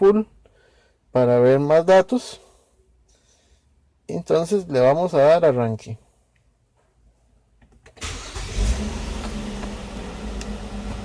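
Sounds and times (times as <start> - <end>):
car engine starting and idling: 8.0 - 11.0.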